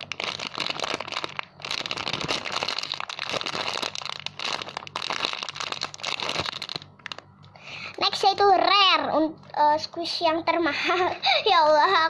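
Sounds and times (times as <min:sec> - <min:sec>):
foam toy crinkling: 0:00.0 - 0:07.2.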